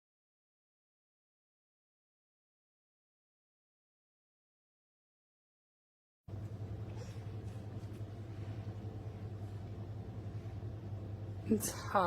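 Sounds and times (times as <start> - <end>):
steady low hum: 6.3 - 12.0.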